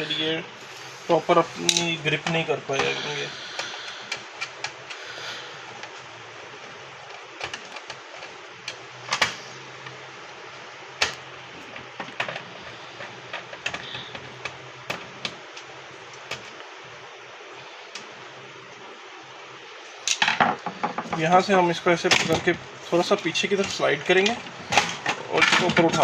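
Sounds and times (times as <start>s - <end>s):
steady low hum: 0.0s - 26.0s
plastic parts clicking and knocking: 6.6s - 10.0s, 11.0s - 16.6s, 20.1s - 21.3s, 22.0s - 26.0s.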